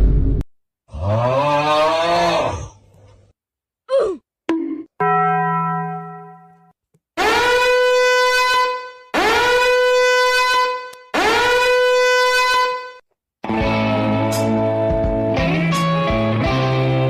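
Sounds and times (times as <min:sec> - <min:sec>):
horn blasts: 0:07.2 - 0:13.0.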